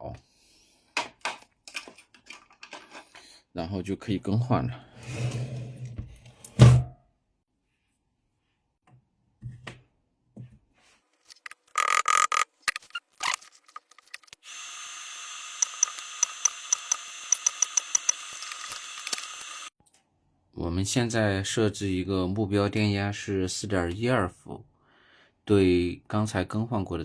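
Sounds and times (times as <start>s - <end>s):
sharp clicks: 15.6s - 19.7s.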